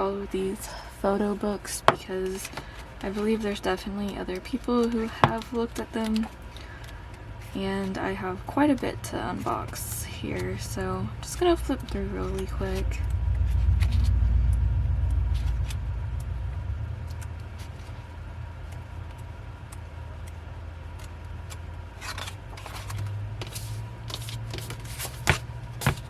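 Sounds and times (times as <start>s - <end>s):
low rumble: 7.3s - 21.9s
book pages flipping: 18.7s - 26.0s
paper rustling: 21.0s - 26.0s.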